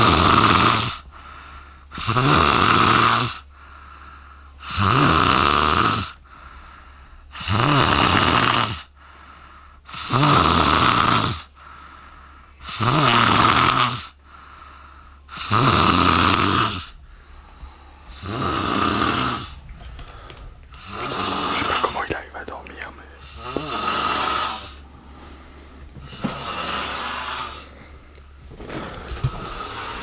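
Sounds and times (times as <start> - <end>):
quiet breathing: 1.0 - 2.0, 3.4 - 4.6, 6.2 - 7.3, 8.9 - 9.9, 11.4 - 12.6, 14.1 - 15.4, 16.9 - 30.0.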